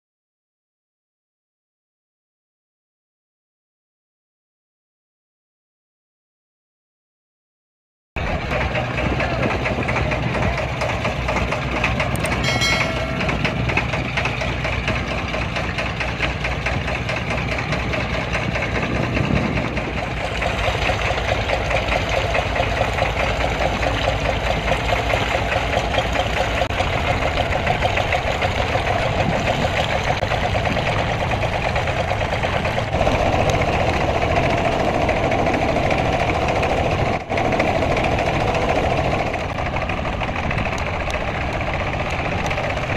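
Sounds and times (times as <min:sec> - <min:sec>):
engine knocking beat: 0:08.2 - 0:42.9.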